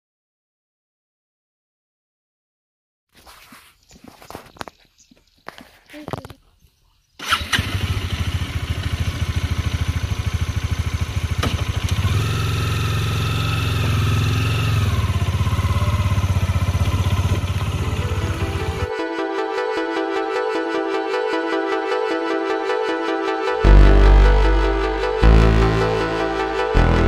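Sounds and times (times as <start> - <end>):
engine running with low throb: 7.6 - 18.9, 23.5 - 27.0.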